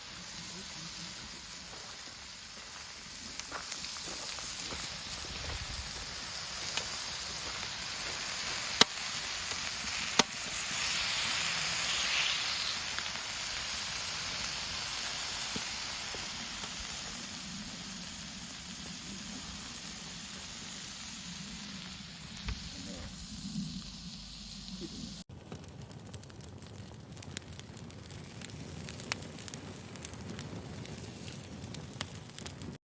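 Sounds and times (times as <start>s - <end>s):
food sizzling on a grill: 0.0s - 25.3s
fire crackling: 0.0s - 32.8s
fire popping: 0.0s - 32.8s.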